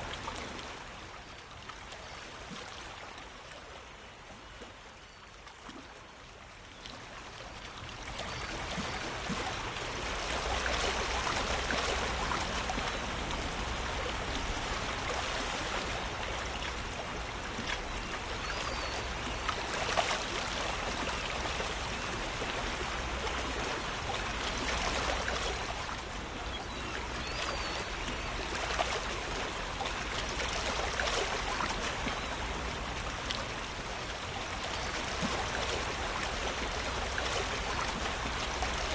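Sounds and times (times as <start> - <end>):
water rushing and trickling: 5.6 - 38.9.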